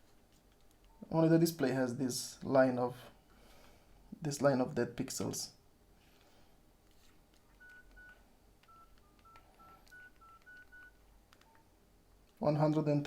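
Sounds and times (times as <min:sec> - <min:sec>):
phone keypad beeps: 0:07.5 - 0:11.7.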